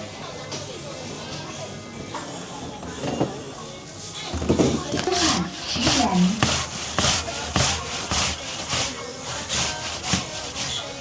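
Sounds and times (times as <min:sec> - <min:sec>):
rhythmic scraping strokes: 0:03.8 - 0:11.0.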